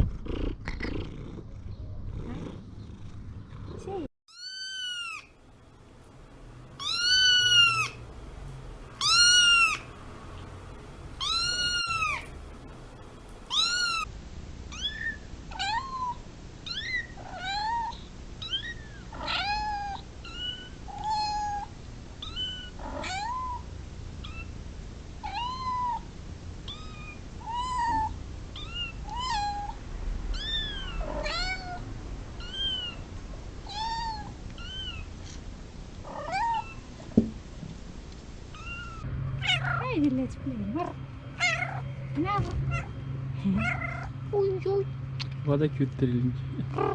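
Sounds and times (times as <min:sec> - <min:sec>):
cats meowing: 0:04.3 - 0:05.4, 0:06.7 - 0:08.1, 0:08.9 - 0:12.7, 0:13.4 - 0:14.1, 0:14.7 - 0:23.6, 0:25.2 - 0:26.0, 0:26.7 - 0:31.8, 0:32.4 - 0:35.4, 0:36.0 - 0:37.0, 0:38.5 - 0:39.9, 0:40.8 - 0:44.2, 0:46.7 - 0:46.9.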